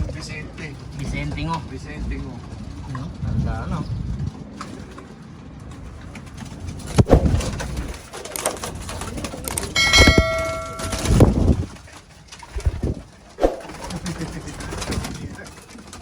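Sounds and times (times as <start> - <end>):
knocks and handling sounds: 6.2 - 11.8
short ringing tone: 9.8 - 11.5.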